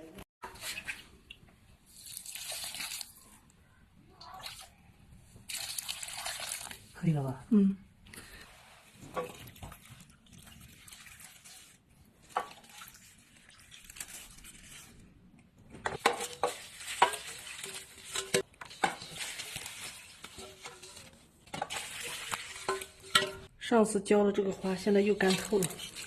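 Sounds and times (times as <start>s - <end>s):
water pouring onto plants: 1.9s - 3.3s, 5.5s - 7.0s, 9.4s - 11.8s, 12.5s - 14.9s
clicks and knocks of pots: 15.7s - 23.5s.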